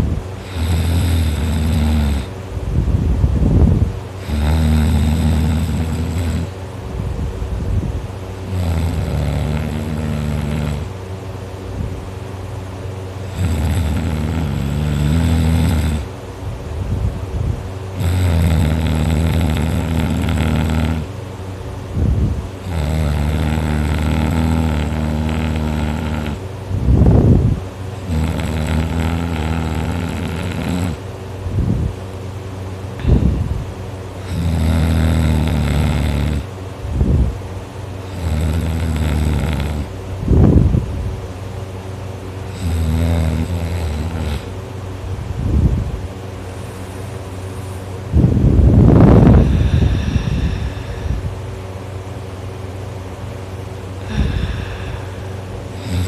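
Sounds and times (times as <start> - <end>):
loud droning snores: 0.0 - 2.4, 3.5 - 6.6, 8.4 - 11.0, 13.2 - 16.2, 17.9 - 21.2, 22.0 - 27.4, 28.0 - 31.8, 33.0 - 37.2, 38.0 - 40.8, 42.4 - 44.6, 46.5 - 51.5, 53.9 - 56.0
rough breathing: 33.0 - 33.5, 49.0 - 51.6, 54.0 - 56.0.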